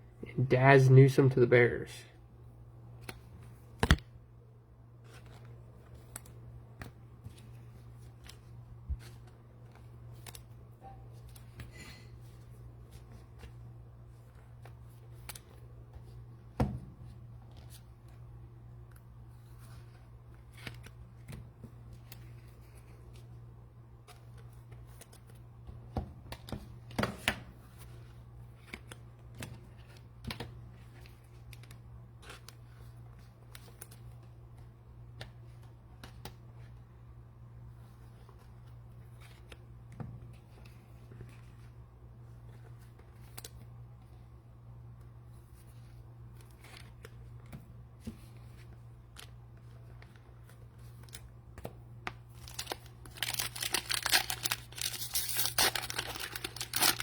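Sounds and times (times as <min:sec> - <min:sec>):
cards and wrappers rustling: 0:05.0 - 0:16.2, 0:45.3 - 0:57.0.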